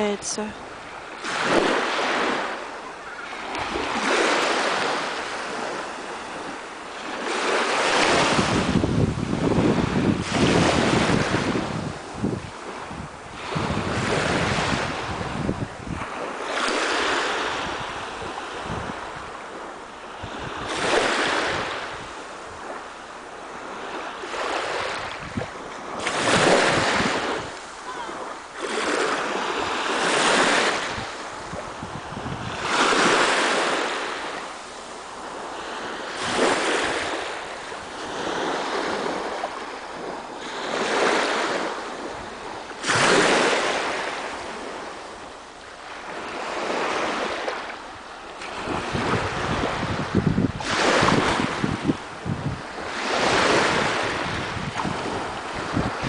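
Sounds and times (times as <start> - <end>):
sea waves washing on shore: 0.0 - 56.0
wind rumble on microphone: 3.4 - 56.0.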